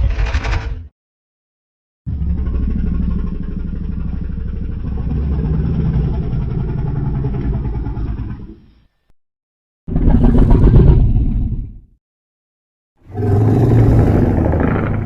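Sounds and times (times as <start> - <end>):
deep rattling monster growl: 2.1 - 8.8, 9.9 - 11.8, 13.0 - 15.0.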